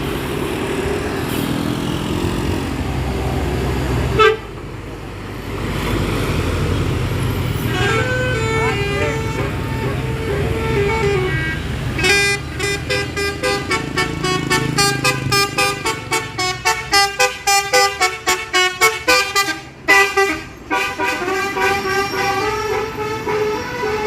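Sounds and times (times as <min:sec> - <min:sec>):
bus engine rumbling: 0:00.0 - 0:24.0
bus horn playing a melody: 0:04.1 - 0:04.6, 0:07.5 - 0:24.0.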